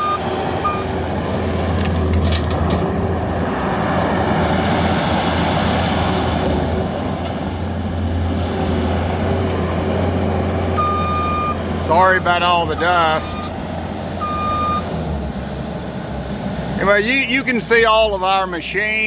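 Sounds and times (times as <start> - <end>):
backup alarm beep: 0.0 - 0.9, 10.8 - 11.6, 12.7 - 13.6, 14.2 - 14.8
diesel engine running under load: 0.0 - 19.0.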